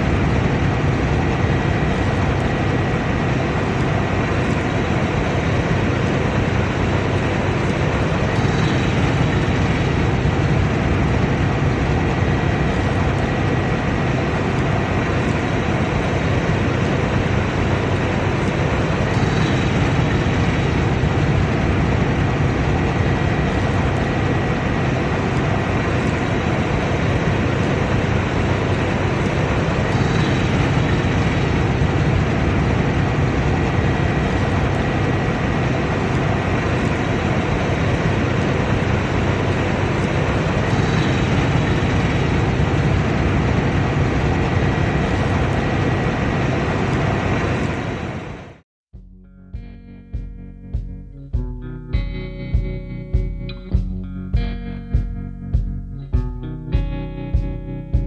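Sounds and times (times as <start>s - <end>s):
combine harvester drone: 0.0s - 48.6s
faint high whine: 0.0s - 48.6s.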